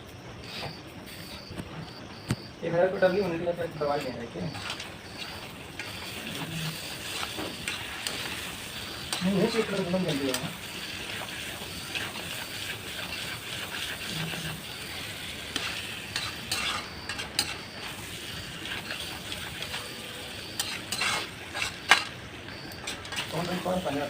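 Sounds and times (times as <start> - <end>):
chicken sizzling in a pan: 3.6 - 24.0
metal spatula scraping a pan: 3.9 - 24.0.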